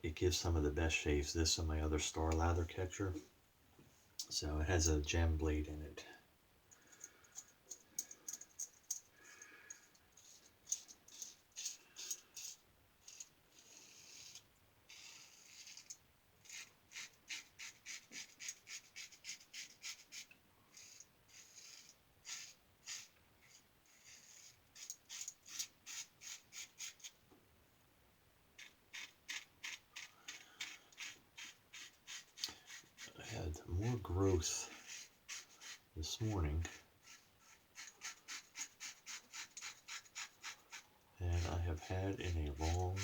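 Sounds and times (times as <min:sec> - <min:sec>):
razor scraping stubble: 0:28.6 - 0:43.0.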